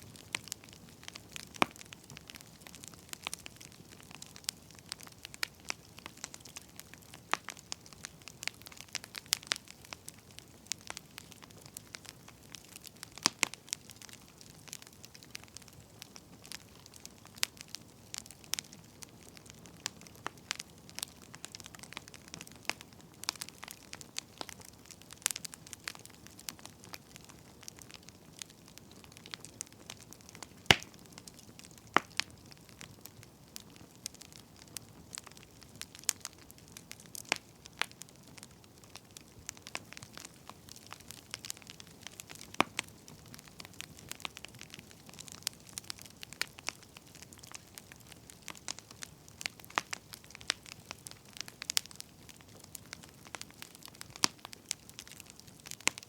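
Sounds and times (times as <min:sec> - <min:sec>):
faint steady hiss: 0:00.0 - 0:56.0
firewood crackling: 0:00.0 - 0:56.0.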